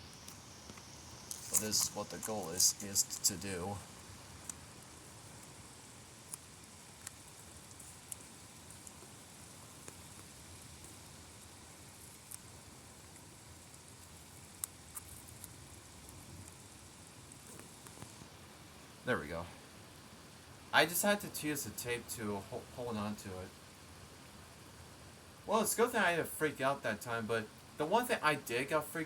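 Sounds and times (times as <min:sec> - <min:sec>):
rain hiss: 0:00.0 - 0:29.0.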